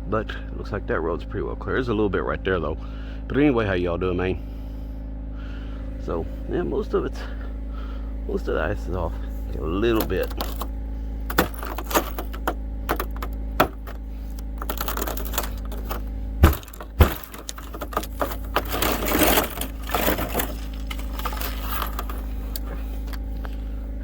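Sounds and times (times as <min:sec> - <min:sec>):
car engine idling: 0:00.0 - 0:24.0
rustling: 0:09.4 - 0:23.8
sharp thumps: 0:09.9 - 0:23.5
clicks and knocks: 0:11.3 - 0:23.2.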